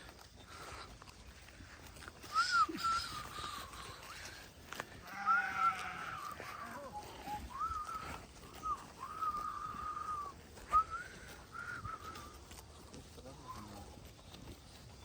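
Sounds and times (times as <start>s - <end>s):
sheep bleating: 4.9s - 7.3s.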